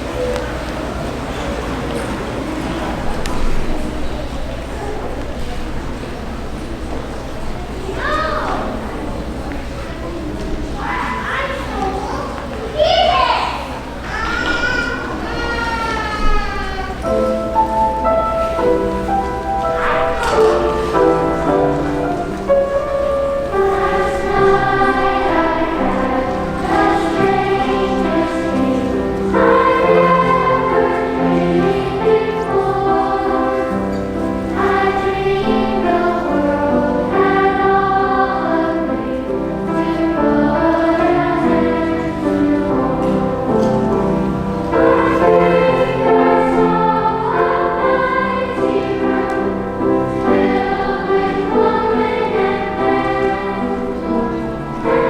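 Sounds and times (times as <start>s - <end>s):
choir singing held notes: 0.0s - 55.0s.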